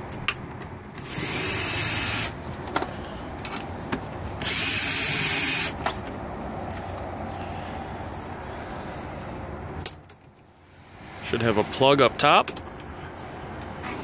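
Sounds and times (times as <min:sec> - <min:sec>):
power drill running: 0:01.0 - 0:02.4, 0:04.4 - 0:05.8.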